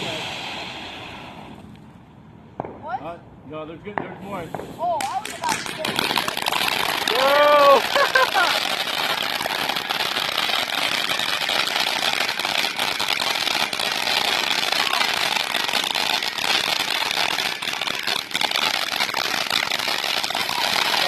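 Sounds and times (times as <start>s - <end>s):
firework crackling: 0.0s - 3.0s, 3.9s - 21.0s
firework pops: 3.9s - 7.3s.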